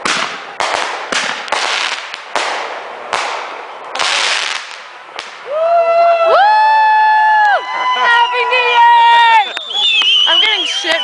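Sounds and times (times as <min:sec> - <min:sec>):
fireworks bangs with crackling: 0:00.0 - 0:05.7.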